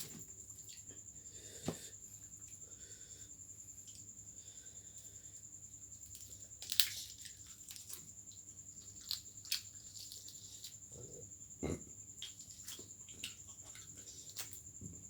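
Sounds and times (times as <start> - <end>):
person chewing and crunching food: 6.0 - 14.8.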